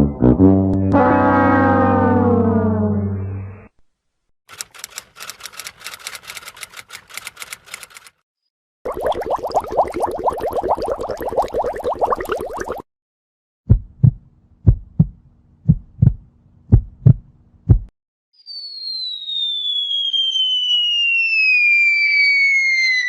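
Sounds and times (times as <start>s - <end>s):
heartbeat thumps: 13.7s - 17.9s
high whistle gliding down: 18.4s - 23.0s.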